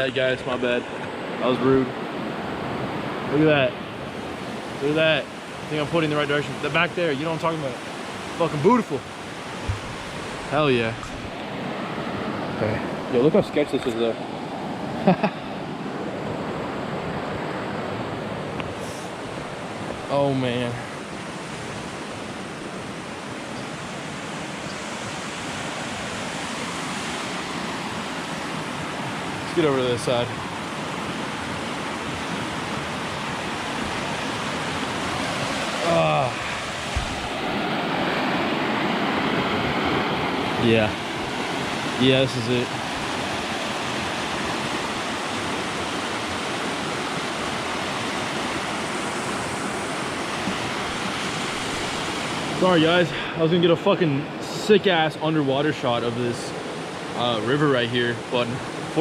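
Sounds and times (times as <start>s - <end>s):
creek water rushing: 0.0s - 59.0s.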